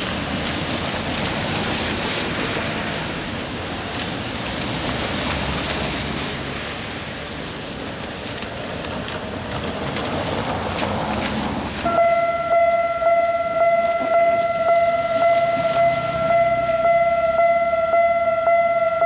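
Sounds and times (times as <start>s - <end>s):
road traffic hiss: 0.0s - 19.0s
level-crossing warning bell: 11.8s - 19.0s.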